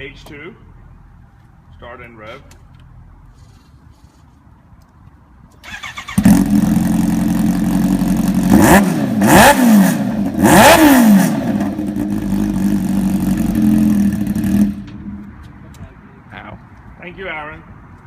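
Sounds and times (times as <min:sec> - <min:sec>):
motorcycle starter cranking: 0:05.6 - 0:06.5
motorcycle engine idling and revving: 0:05.6 - 0:16.5.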